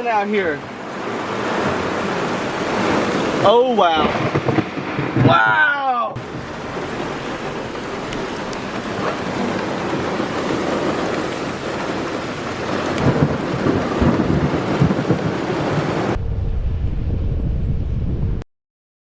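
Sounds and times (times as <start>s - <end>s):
heavy rain pouring: 0.0s - 16.2s
thunder rumbling: 0.0s - 18.4s
low steady rumble: 16.1s - 18.4s.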